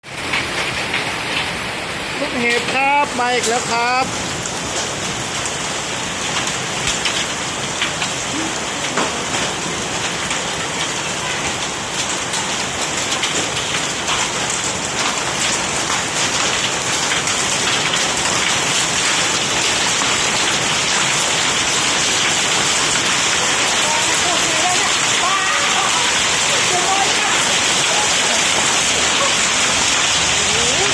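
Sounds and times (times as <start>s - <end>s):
hail and heavy rain pelting: 0.0s - 30.9s.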